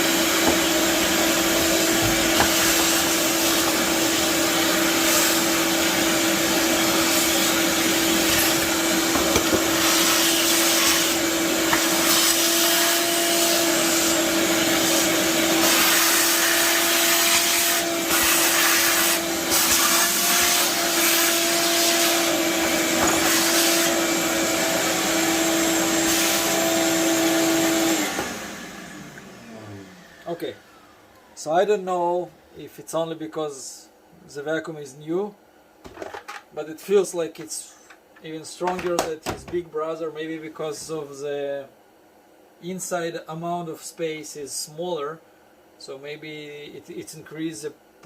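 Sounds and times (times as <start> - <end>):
shop vacuum running: 0.0 - 32.3.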